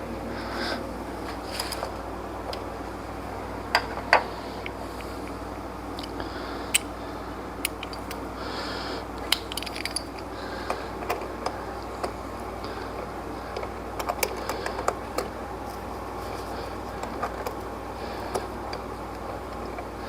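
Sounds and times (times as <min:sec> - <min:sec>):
steady low hum: 0:00.0 - 0:20.0
metal hand tools clinking: 0:09.3 - 0:10.2.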